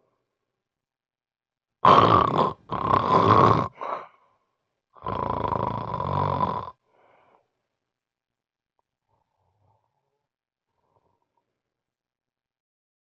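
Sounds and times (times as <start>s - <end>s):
long drawn-out snore: 1.8s - 4.1s, 5.0s - 6.8s
harsh snorts: 1.8s - 4.2s.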